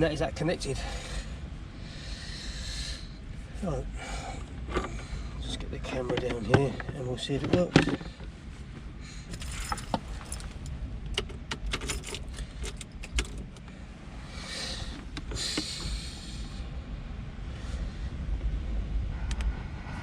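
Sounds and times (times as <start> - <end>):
low rumble: 0.0 - 20.0
hardware and cables rattling: 4.4 - 13.7
short hissing rushes: 14.3 - 16.6.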